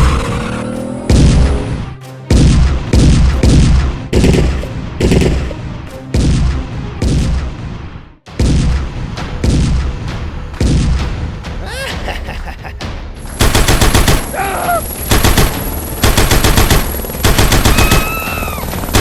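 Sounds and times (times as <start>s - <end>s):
loud heavy blasts: 13.3s - 19.0s.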